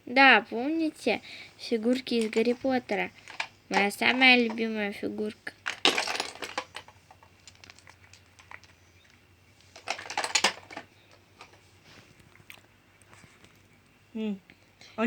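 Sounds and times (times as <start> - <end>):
plastic toys clattering: 1.0 - 11.7
plastic figurines clicking and tapping: 1.6 - 11.6.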